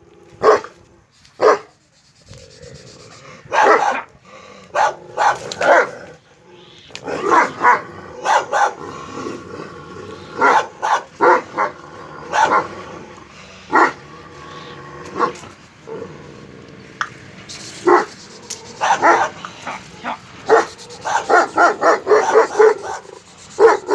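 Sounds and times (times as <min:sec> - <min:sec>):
dogs barking: 0:00.4 - 0:00.7, 0:03.5 - 0:06.0, 0:07.0 - 0:09.2, 0:10.3 - 0:14.1, 0:17.5 - 0:23.9.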